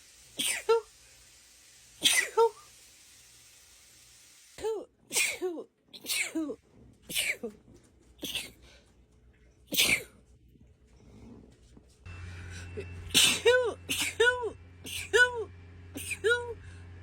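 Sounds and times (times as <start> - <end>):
person sneezing: 0.4 - 0.9, 4.6 - 7.5, 8.2 - 8.6, 9.7 - 10.2, 13.2 - 15.3.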